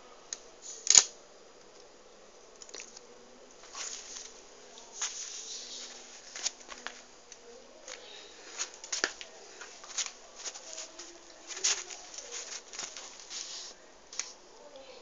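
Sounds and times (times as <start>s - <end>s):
plastic toy pistol clicking and rattling: 0.8s - 1.2s.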